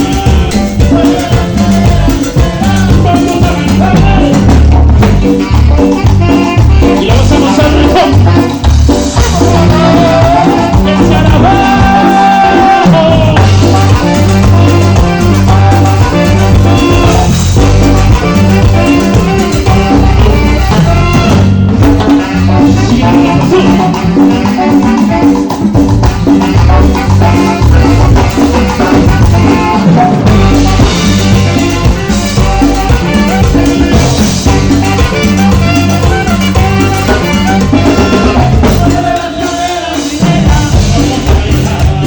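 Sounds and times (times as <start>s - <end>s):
drums and percussion: 0.0s - 42.0s
live band playing latin dance music: 0.0s - 42.0s
rhythmic bass line: 0.0s - 42.0s.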